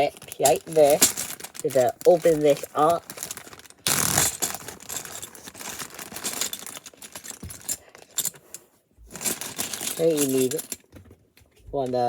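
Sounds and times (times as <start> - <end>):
plastic toy bricks clattering: 0.0 - 8.4, 9.1 - 11.1.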